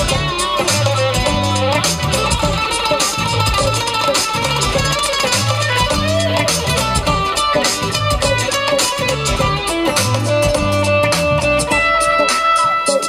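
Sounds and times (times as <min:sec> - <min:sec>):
repeating bass line: 0:00.0 - 0:12.1
electric guitar playing: 0:00.0 - 0:13.0
steady drum beat: 0:00.0 - 0:13.0.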